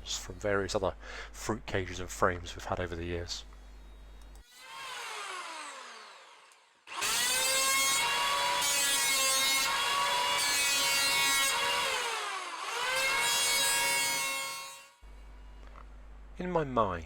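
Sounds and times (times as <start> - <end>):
power saw cutting wood: 4.4 - 15.0.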